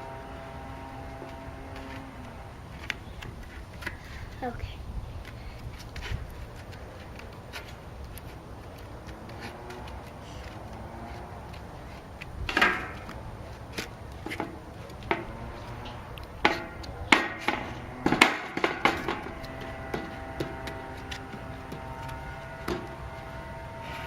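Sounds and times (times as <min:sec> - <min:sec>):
knocks and thumps on wood: 0:16.4 - 0:23.0.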